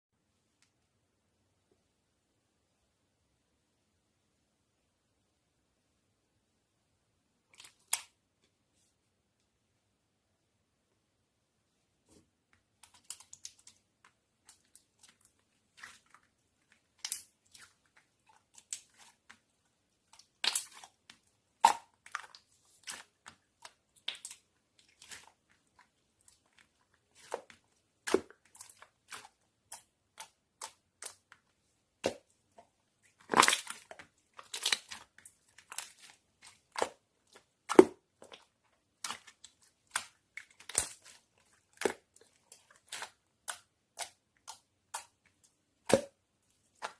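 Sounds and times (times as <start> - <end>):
slime squished by hand: 20.1 - 31.4, 32.0 - 46.9.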